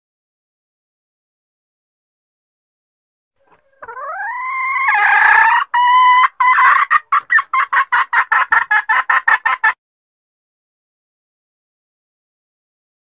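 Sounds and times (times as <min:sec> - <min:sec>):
hen calling and clucking: 0:03.4 - 0:09.8.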